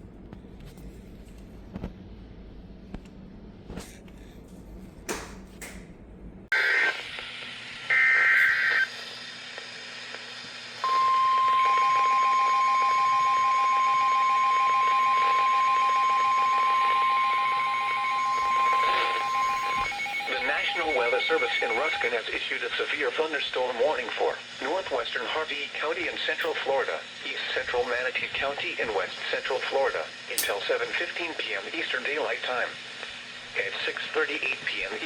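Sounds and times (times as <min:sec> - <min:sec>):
radio hiss: 0:06.5 - 0:35.0
screeching data bursts: 0:07.9 - 0:09.0, 0:10.8 - 0:22.8
faint pulsing beeps: 0:10.8 - 0:22.3
steady warning alarm tone: 0:10.8 - 0:24.0.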